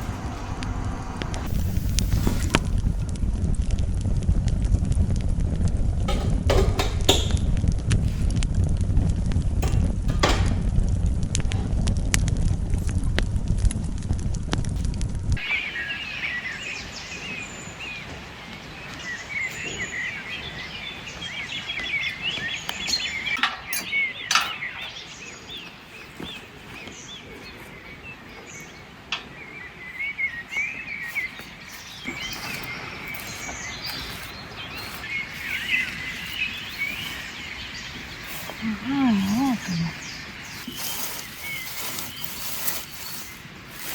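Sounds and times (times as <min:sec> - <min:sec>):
outdoor background noise: 0:00.0 - 0:43.9
songbirds chirping and singing: 0:15.4 - 0:43.9.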